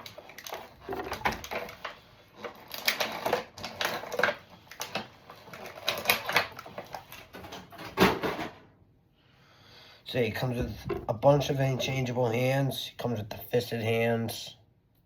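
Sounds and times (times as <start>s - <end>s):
plastic packaging clicking and crinkling: 0.0s - 8.4s.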